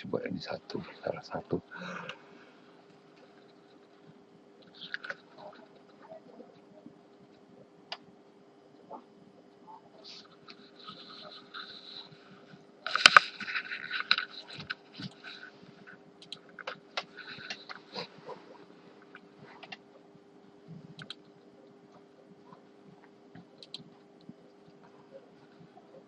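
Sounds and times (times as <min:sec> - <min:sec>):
steady low hum: 0:00.0 - 0:26.0
computer mouse clicks: 0:16.2 - 0:18.0, 0:21.0 - 0:21.3, 0:23.3 - 0:23.9.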